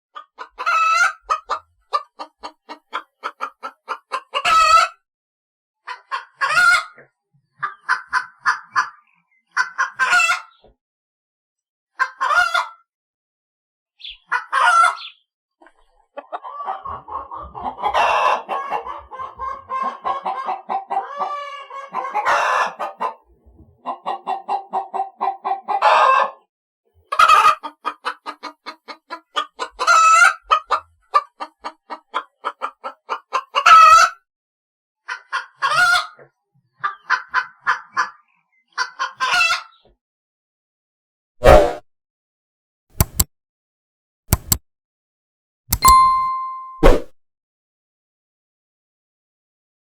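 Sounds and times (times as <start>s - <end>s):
chickens clucking and squawking: 0.2s - 5.0s, 5.8s - 10.7s, 12.0s - 12.9s, 14.0s - 34.2s, 35.0s - 40.0s.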